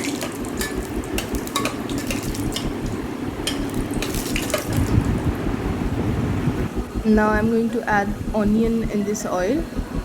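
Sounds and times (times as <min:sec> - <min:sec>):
spices sizzling in oil: 0:00.0 - 0:04.8
oil crackling and popping: 0:00.0 - 0:05.1.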